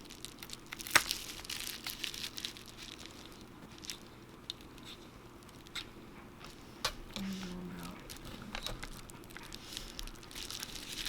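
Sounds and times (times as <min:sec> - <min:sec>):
screen glass crackling and crunching: 0:00.0 - 0:04.8, 0:08.1 - 0:11.0.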